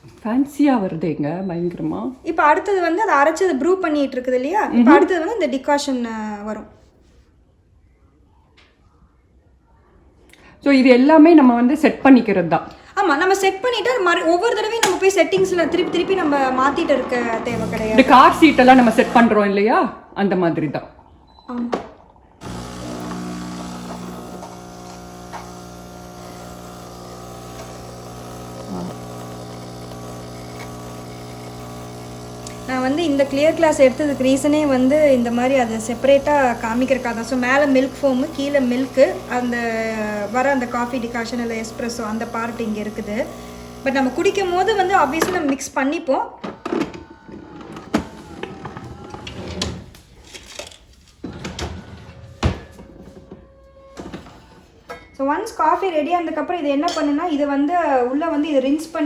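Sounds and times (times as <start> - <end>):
espresso machine pump humming: 14.2 - 19.3, 22.4 - 45.7, 46.5 - 49.4.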